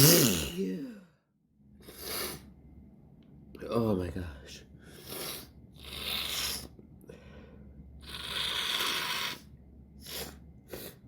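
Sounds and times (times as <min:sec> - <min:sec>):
woman sniffing and breathing hard: 0:01.8 - 0:02.5, 0:04.9 - 0:06.7, 0:08.0 - 0:11.0.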